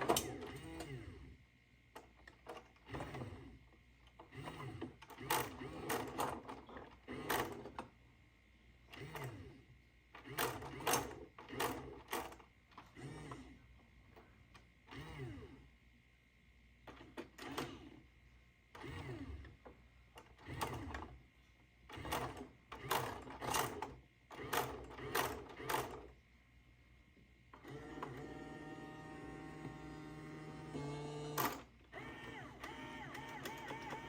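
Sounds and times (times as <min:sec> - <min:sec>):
claw crane motors running: 0:27.6 - 0:34.0
sharp mechanical clicks: 0:31.4 - 0:34.0.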